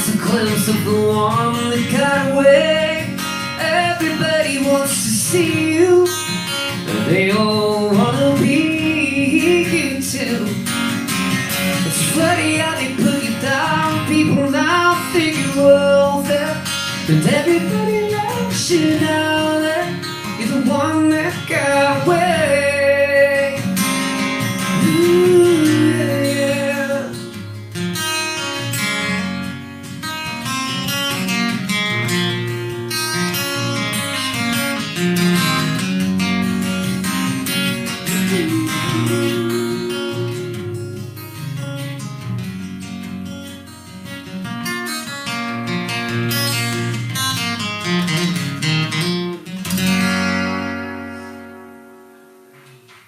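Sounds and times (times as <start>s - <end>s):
wordless sung vocal: 0.0s - 11.0s, 11.6s - 27.5s, 37.0s - 41.8s
acoustic guitar strumming: 0.0s - 53.0s.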